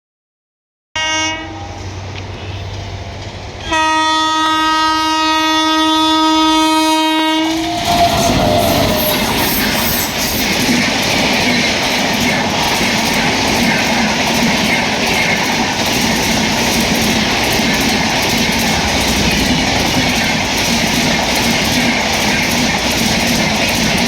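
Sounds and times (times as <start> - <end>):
train horn blasts: 1.0 - 1.9, 3.7 - 9.4
train passing at speed: 1.0 - 24.0.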